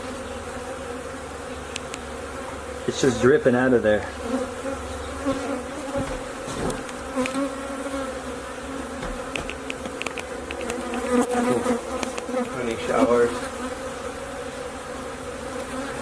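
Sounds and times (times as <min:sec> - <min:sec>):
honeybees buzzing: 0:00.0 - 0:16.0
faint ticks: 0:01.7 - 0:02.0, 0:09.0 - 0:11.4, 0:12.0 - 0:12.6.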